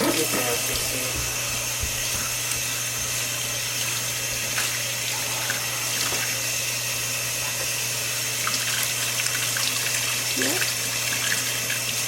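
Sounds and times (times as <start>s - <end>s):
tap water running: 0.0s - 12.0s.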